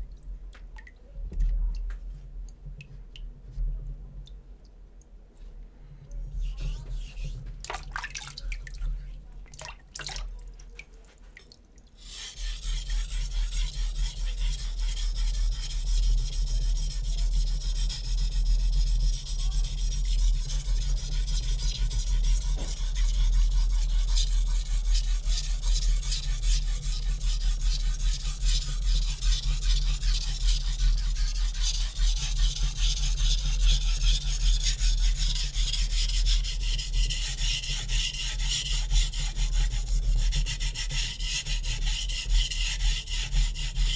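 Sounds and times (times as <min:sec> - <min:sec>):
knife rubbing on whetstone: 0:06.3 - 0:07.4, 0:12.0 - 0:43.9.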